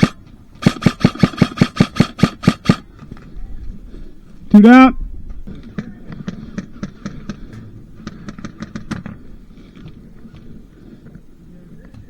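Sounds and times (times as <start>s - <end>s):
airsoft gunshots cracking: 0.0s - 2.8s.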